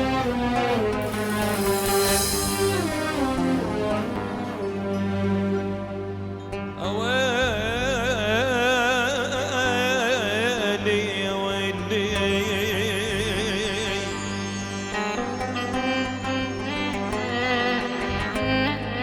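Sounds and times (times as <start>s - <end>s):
sustained low accompaniment: 0.0s - 9.3s
ornamented wordless vocal: 6.6s - 14.3s.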